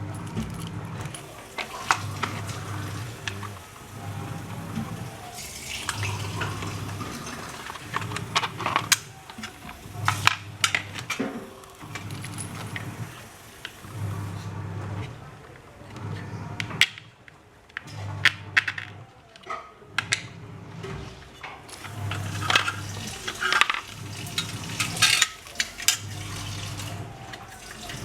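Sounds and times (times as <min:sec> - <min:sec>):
metal parts clinking: 0:00.0 - 0:03.6, 0:06.0 - 0:13.2, 0:21.7 - 0:26.4.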